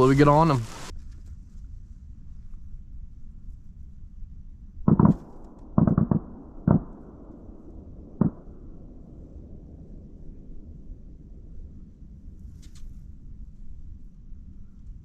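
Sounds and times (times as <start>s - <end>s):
distant shotgun shots echoing: 4.9s - 9.7s.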